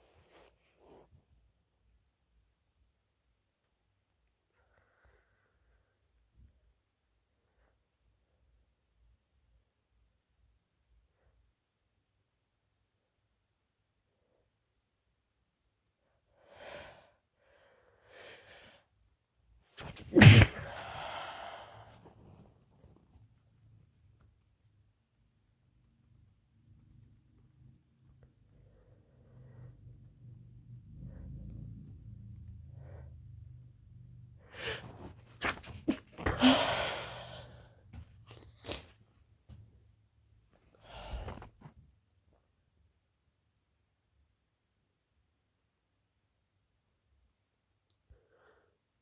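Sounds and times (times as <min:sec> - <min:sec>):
woman sneezing: 0:19.8 - 0:21.3, 0:34.8 - 0:37.4
breathy exhale: 0:19.8 - 0:22.0, 0:34.5 - 0:37.7
gasping inhale: 0:19.8 - 0:22.0, 0:34.5 - 0:37.7
soft breaths: 0:19.8 - 0:23.7, 0:28.3 - 0:39.7.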